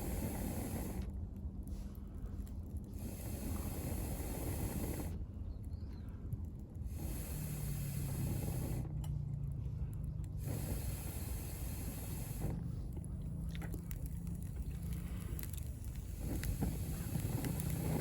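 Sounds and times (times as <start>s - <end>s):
burning wood crackling: 0.0s - 18.0s
flames rushing in wood stove: 0.0s - 18.0s.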